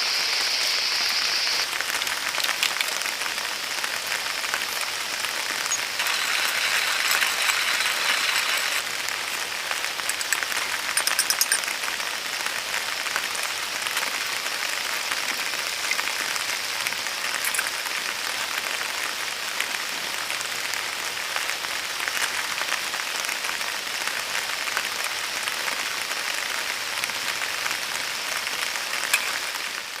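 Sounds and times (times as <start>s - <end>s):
rain falling: 0.0s - 30.0s
rattle of sharp ticks: 5.7s - 8.8s, 10.0s - 11.7s.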